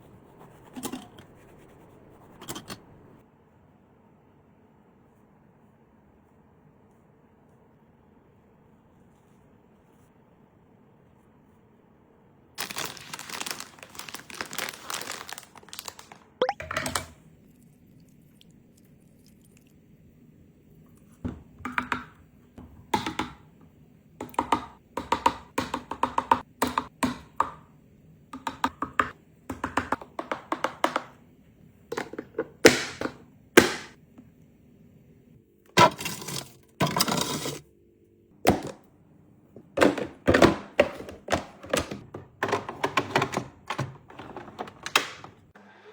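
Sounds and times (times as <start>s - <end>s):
crackling rustles: 12.6s - 16.4s.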